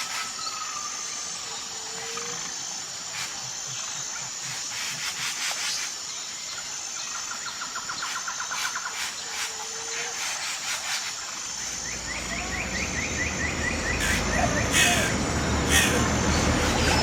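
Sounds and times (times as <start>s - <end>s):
high insect hum: 0.0s - 17.0s
raspy scraping calls: 13.8s - 17.0s.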